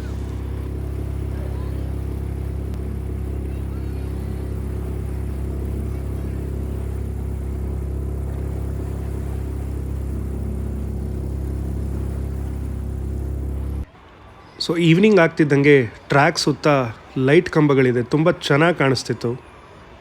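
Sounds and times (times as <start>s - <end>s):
toy train engine humming: 0.0s - 13.9s.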